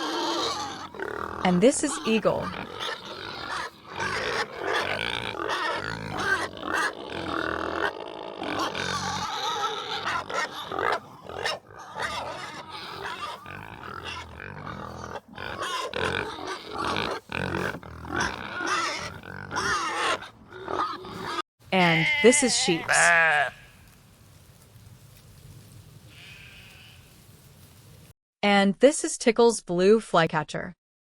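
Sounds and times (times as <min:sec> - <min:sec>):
harsh animal calls: 0:00.0 - 0:23.7, 0:26.1 - 0:27.1.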